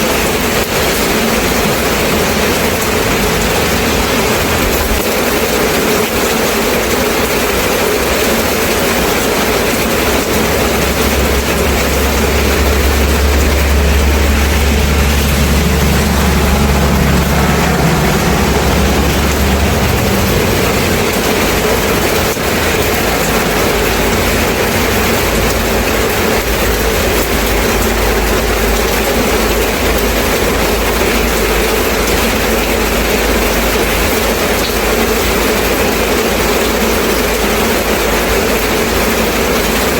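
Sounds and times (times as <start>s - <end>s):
steady rain hiss: 0.0s - 39.9s
low rumble: 8.9s - 29.3s.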